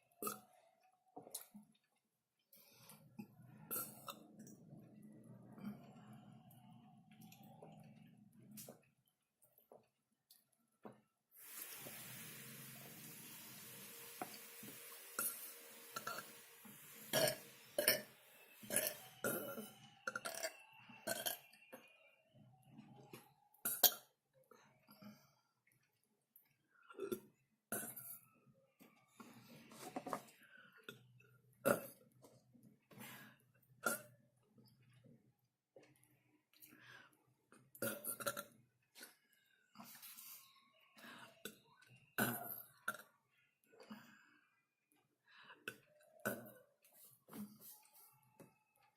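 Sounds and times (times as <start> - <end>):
person burping: 17.1 - 18.1.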